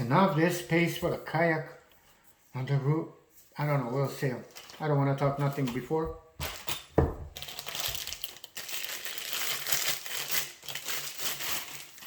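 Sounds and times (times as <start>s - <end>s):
packaging crinkling: 4.4s - 5.7s, 6.4s - 12.0s.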